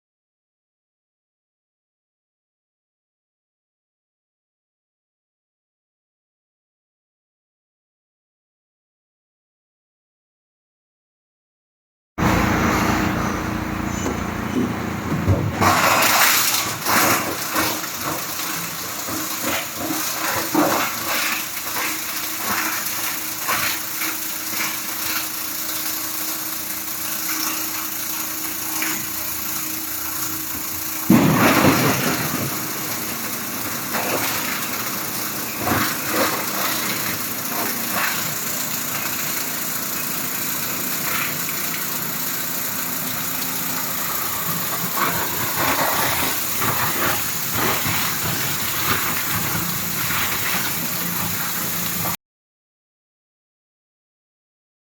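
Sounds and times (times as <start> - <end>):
plastic granulator running: 12.2 - 52.2.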